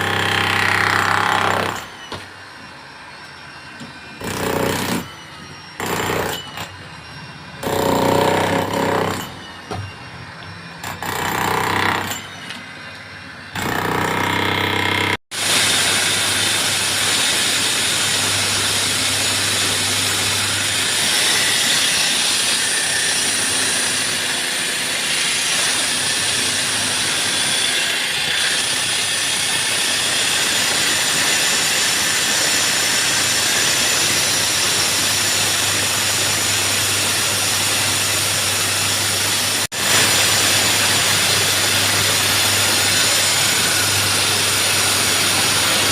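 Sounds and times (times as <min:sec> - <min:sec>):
power saw cutting concrete: 0:00.0 - 0:02.1, 0:04.2 - 0:05.1, 0:05.8 - 0:06.6, 0:07.6 - 0:09.7, 0:13.5 - 0:45.9.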